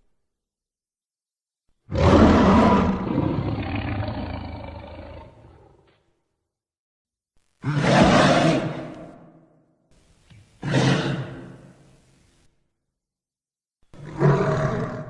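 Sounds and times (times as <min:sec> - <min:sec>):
monster roar: 0:01.9 - 0:05.7.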